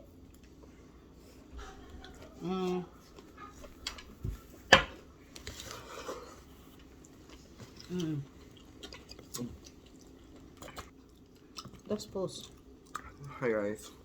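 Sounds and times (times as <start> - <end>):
person humming mm: 2.4 - 2.9, 7.8 - 8.3
person chewing food: 5.3 - 14.0.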